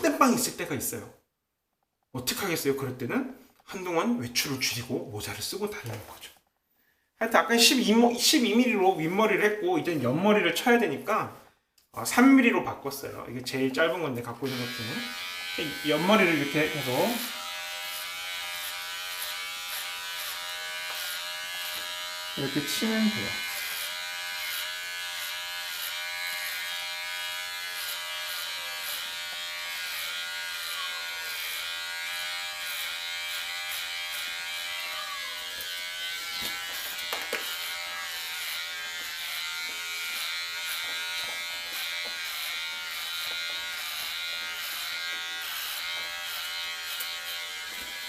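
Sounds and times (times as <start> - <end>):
electric hair clipper cutting hair: 14.4 - 48.0.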